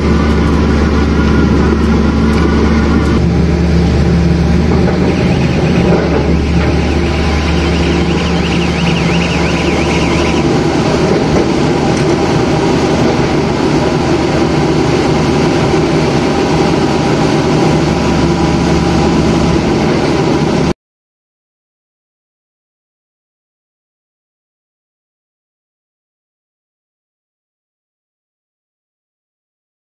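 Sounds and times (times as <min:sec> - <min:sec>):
warbling whine: 0:00.0 - 0:19.6
drilling rig engine running: 0:00.0 - 0:20.7.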